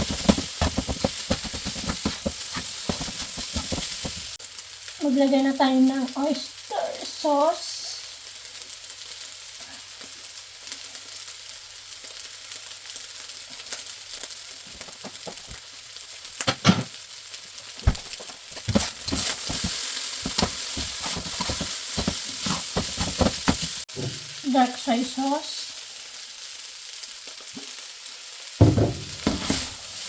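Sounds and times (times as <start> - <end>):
utensil scraping a pan: 0.0 - 4.4, 18.6 - 23.8, 29.0 - 30.0
rice sizzling in frying pan: 0.0 - 30.0.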